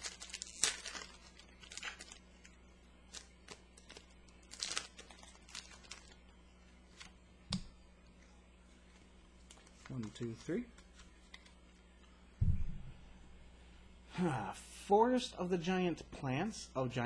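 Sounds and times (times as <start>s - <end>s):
foil wrapper crinkling and tearing: 0.0s - 6.2s.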